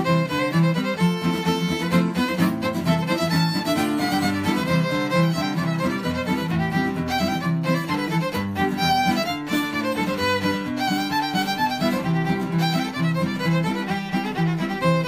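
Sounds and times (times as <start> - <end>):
fiddle playing a reel: 0.0 - 15.0
guitar accompaniment: 0.0 - 15.0.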